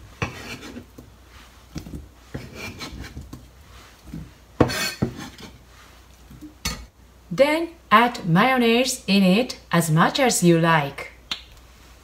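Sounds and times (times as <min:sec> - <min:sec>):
fruit slices scraping in a bowl: 0:00.2 - 0:06.0.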